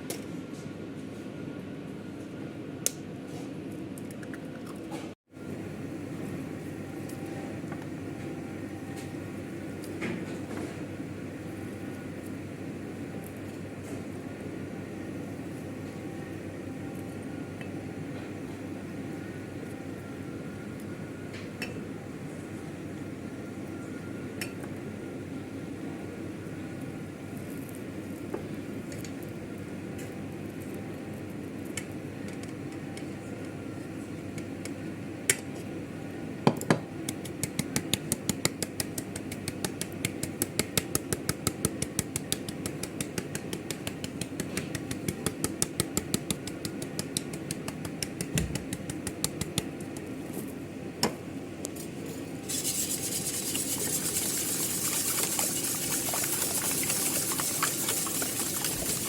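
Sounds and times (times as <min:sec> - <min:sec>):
steady hiss: 0:52.4 - 0:59.0.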